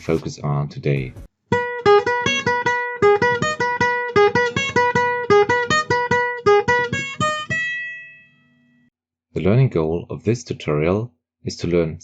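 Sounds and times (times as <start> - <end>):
acoustic guitar picking: 1.5 - 8.2.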